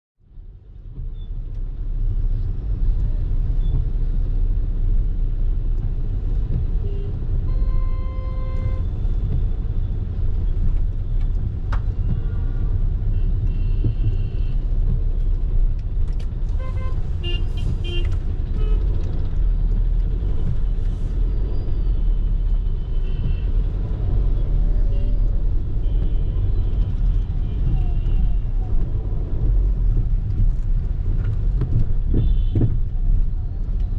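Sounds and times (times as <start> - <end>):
traffic low rumble: 0.2 - 33.9
car horns: 6.8 - 9.0, 16.5 - 18.9, 32.0 - 32.8.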